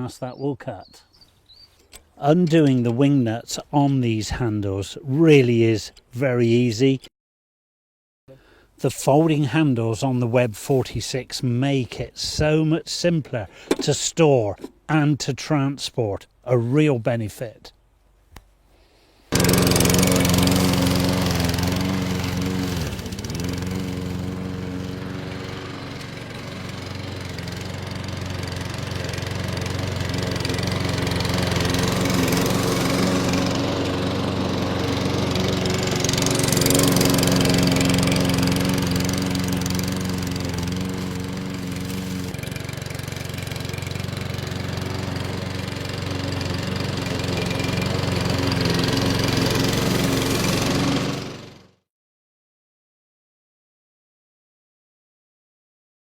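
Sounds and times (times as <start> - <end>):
lawnmower engine running: 13.5 - 14.9, 19.3 - 51.8.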